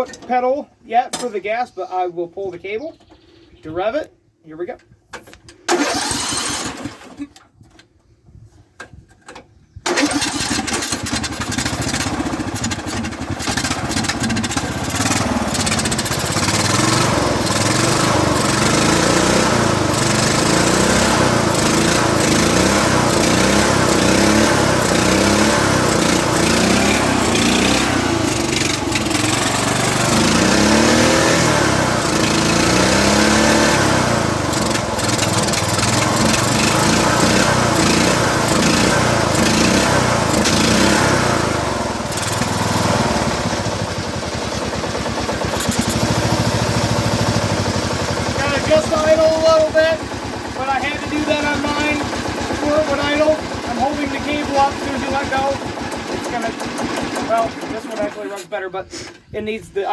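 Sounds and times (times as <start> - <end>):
riding lawn mower engine revving: 5.7 - 7.4, 9.8 - 59.1.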